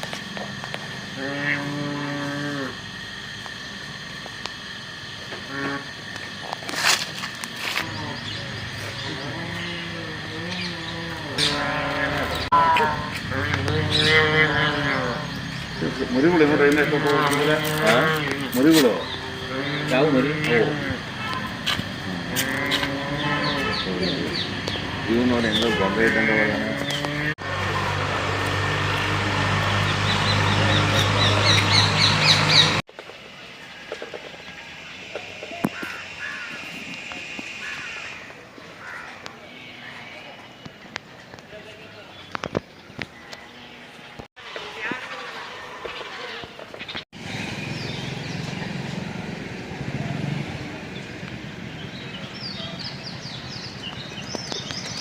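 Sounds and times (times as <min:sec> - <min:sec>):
steady low hum: 0:00.0 - 0:33.8
birds chirping: 0:07.8 - 0:27.4, 0:29.6 - 0:32.9, 0:34.2 - 0:55.0.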